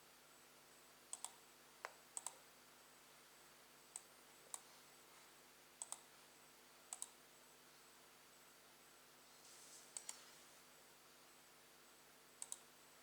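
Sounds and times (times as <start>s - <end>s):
faint sharp clicks: 1.1s - 2.4s, 5.8s - 6.1s, 6.9s - 7.2s, 9.9s - 10.2s, 12.4s - 12.7s.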